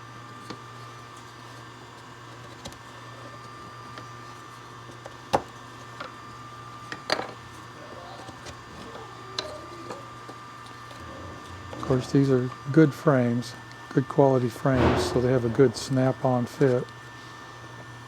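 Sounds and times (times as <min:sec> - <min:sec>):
steady low hum: 0:14.5 - 0:17.8.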